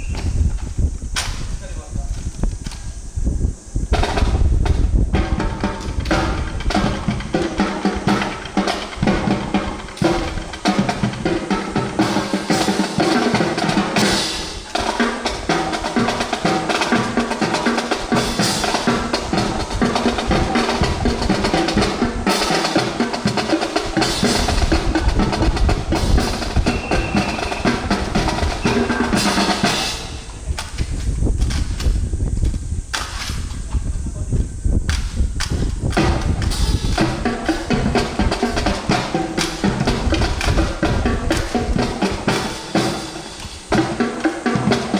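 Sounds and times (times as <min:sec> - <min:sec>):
snare drum rolls: 0:03.9 - 0:32.1, 0:34.9 - 0:44.9.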